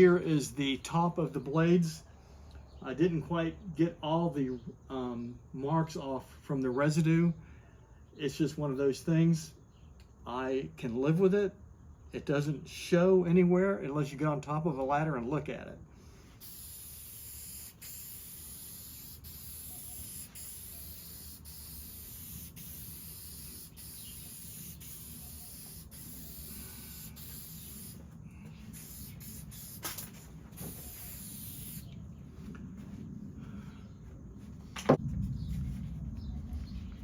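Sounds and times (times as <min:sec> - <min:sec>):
aerosol can spraying: 0:16.4 - 0:31.9.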